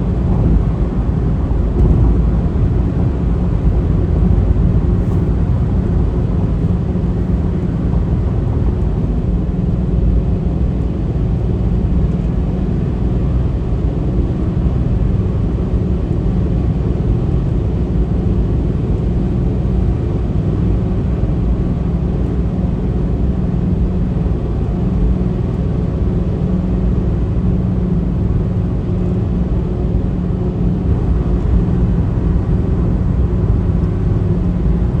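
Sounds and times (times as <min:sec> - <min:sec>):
steady low rumble: 0:00.0 - 0:35.0.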